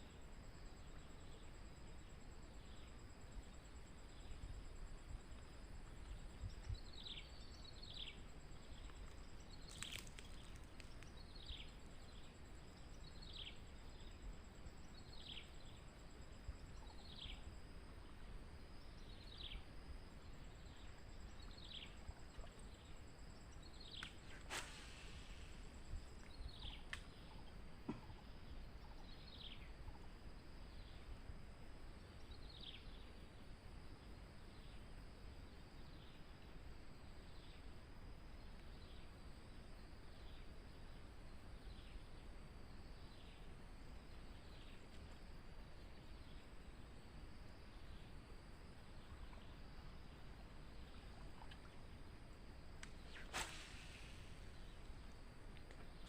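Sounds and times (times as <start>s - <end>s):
high insect drone: 0.0s - 27.8s
bird falling whistle: 53.1s - 54.2s.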